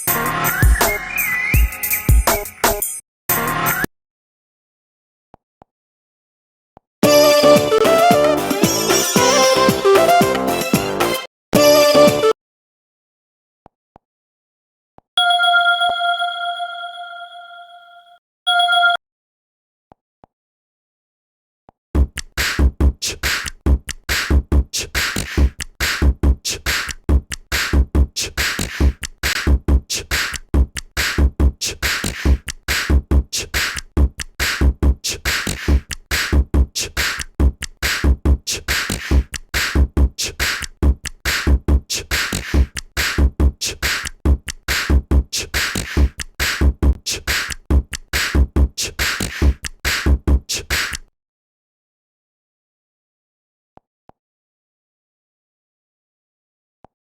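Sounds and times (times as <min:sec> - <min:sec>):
electronic drum beat ringtone: 0:00.0 - 0:01.0, 0:01.6 - 0:03.5, 0:07.0 - 0:10.9, 0:11.6 - 0:12.3
deep bass thumps: 0:22.0 - 0:22.9.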